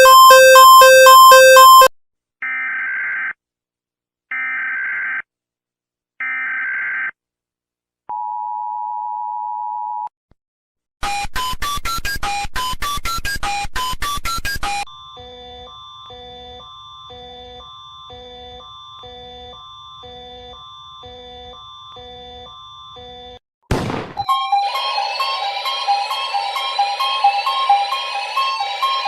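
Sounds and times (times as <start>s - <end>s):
fast electronic tones: 0.0s - 1.9s
steady attention tone: 0.0s - 1.9s.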